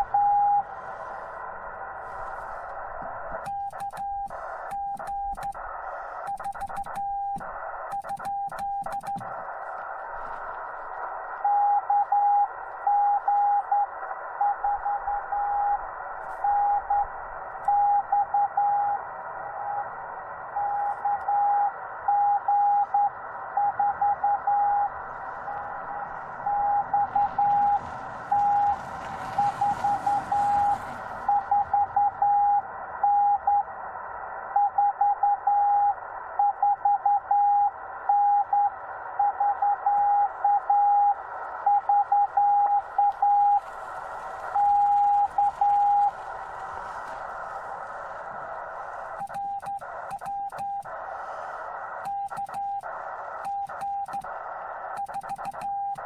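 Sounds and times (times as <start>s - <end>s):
radio static hiss: 0.0s - 23.6s, 24.8s - 34.6s, 35.4s - 56.0s
morse code tone: 3.4s - 5.6s, 6.3s - 9.2s, 26.4s - 28.8s, 34.6s - 43.6s, 44.6s - 46.1s, 49.2s - 50.9s, 52.0s - 52.8s, 53.4s - 54.3s, 54.9s - 56.0s.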